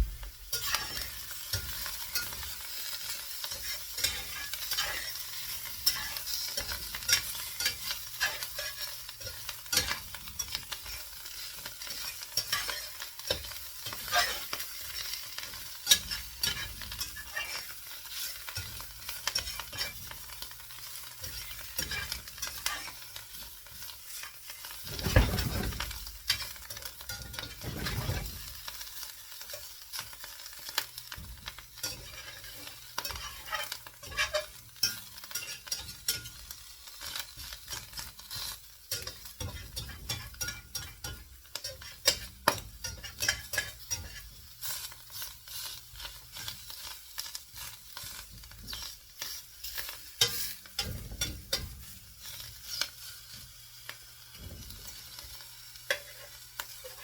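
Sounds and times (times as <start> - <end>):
omelette sizzling in a pan: 0.0 - 57.0.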